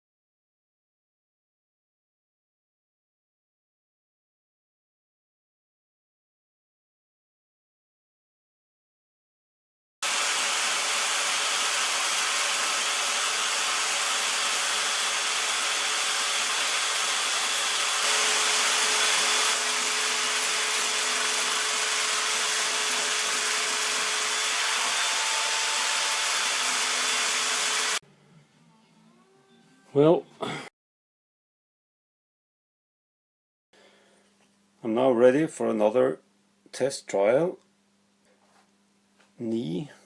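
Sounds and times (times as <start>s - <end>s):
power tool running with hiss: 10.0s - 28.0s.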